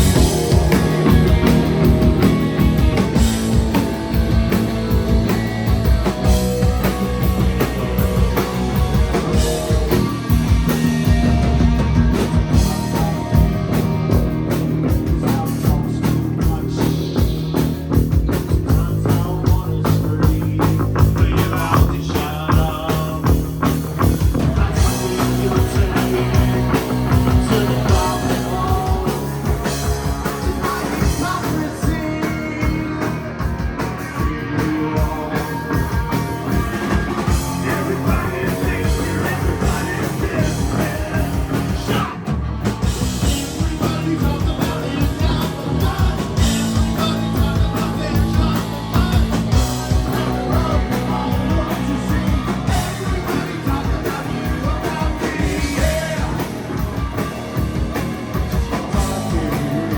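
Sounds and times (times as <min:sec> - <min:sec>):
live rock band playing: 0:00.0 - 0:59.9
person singing: 0:12.4 - 0:14.1, 0:24.4 - 0:42.3, 0:43.2 - 0:57.0, 0:58.5 - 0:59.9.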